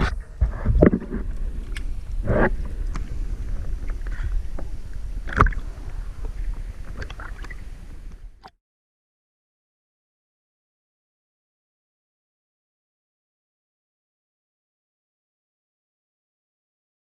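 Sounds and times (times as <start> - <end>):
underwater rumble of moving water: 0.0 - 8.4.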